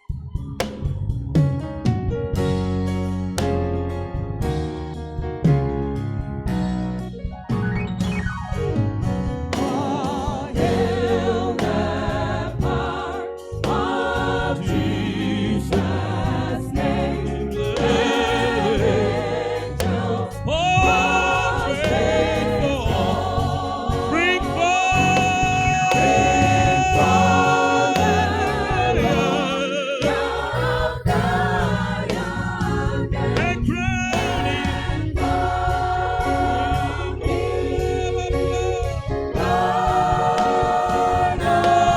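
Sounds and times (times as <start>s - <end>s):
band with steady beat: 5.4s - 41.9s
gospel choir singing: 9.5s - 41.9s.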